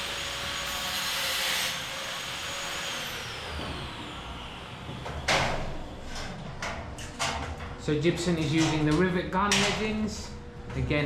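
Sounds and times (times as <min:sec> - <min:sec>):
power tool cutting metal: 0:00.0 - 0:04.9.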